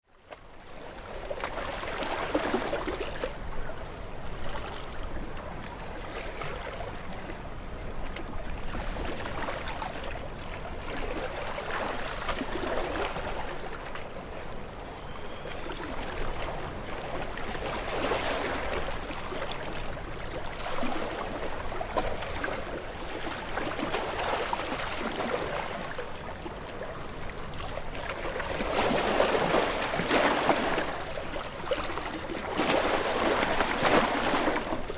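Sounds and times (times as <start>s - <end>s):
ocean waves breaking on rocks: 15.4s - 34.9s.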